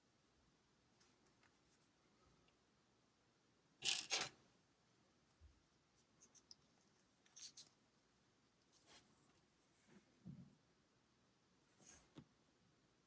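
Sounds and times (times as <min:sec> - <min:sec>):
plastic bricks clattering: 0:03.8 - 0:04.3.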